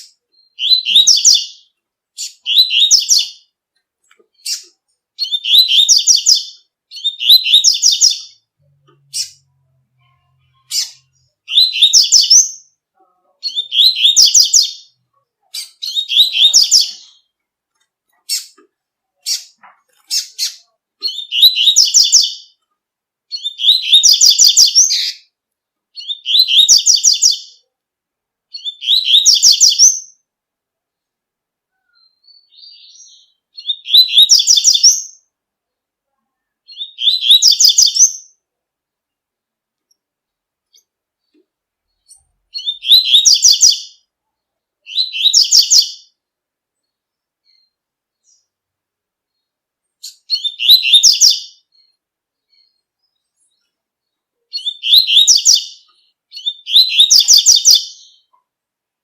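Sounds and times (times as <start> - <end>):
bird singing high-pitched phrase: 0.0 - 3.5, 4.3 - 17.4, 19.2 - 22.6, 23.3 - 25.3, 26.0 - 27.7, 28.5 - 30.3, 31.7 - 35.3, 36.2 - 38.4, 41.9 - 44.1, 44.8 - 46.2, 49.3 - 53.6, 54.5 - 58.4.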